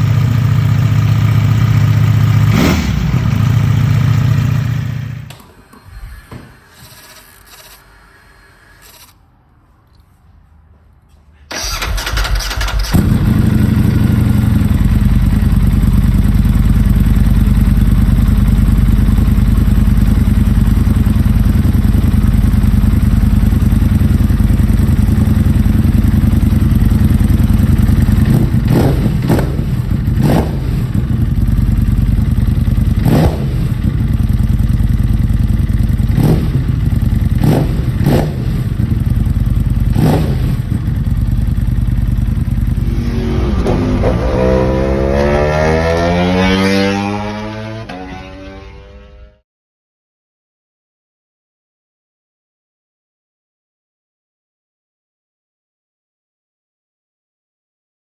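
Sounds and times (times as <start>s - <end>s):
motorcycle engine idling: 0.0s - 5.3s, 13.0s - 45.4s
motorcycle starter cranking: 5.2s - 9.2s, 11.5s - 13.2s.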